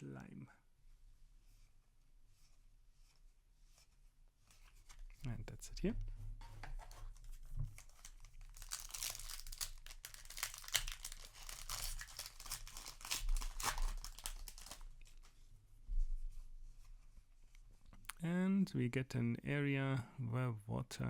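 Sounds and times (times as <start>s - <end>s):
handling cards: 6.7s - 15.3s
foil wrapper tearing and crinkling: 7.7s - 15.3s.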